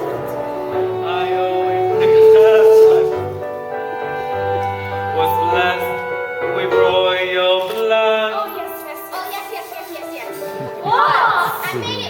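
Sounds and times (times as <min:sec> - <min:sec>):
instrumental accompaniment: 0:00.0 - 0:12.0
voices singing: 0:10.6 - 0:12.0.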